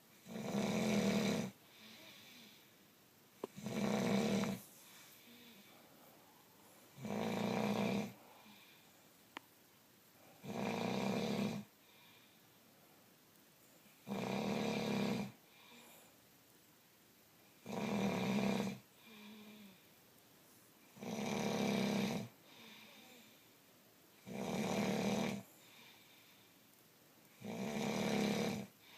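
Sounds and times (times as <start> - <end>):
quiet breathing: 0.0 - 16.8, 17.4 - 28.9
person snoring: 0.2 - 2.5, 3.4 - 4.6, 6.9 - 8.6, 10.4 - 11.7, 14.0 - 15.4, 17.6 - 19.8, 21.0 - 23.2, 24.2 - 25.8, 27.4 - 28.7.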